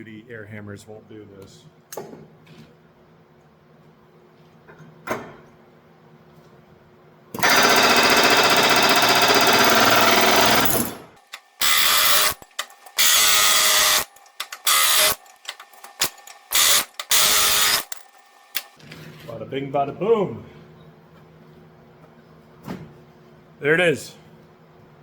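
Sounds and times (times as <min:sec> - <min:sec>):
pneumatic air hammer firing: 0:07.4 - 0:18.8.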